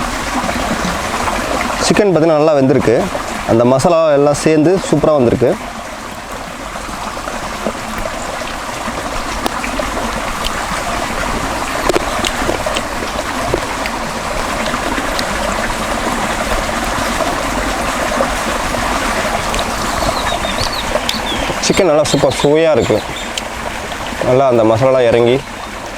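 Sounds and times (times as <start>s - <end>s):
running water trickling: 0.0s - 25.9s
faint clicks: 19.4s - 21.6s.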